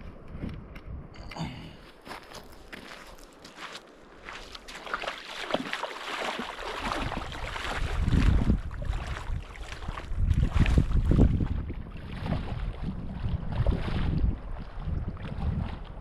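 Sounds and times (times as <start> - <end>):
wind buffeting microphone: 0.0 - 1.3, 6.7 - 16.0
river water splashing: 2.1 - 16.0.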